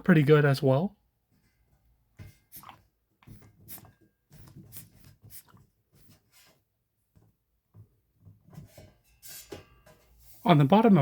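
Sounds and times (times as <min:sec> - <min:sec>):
toy figure rubbing in hands: 0:02.5 - 0:06.6.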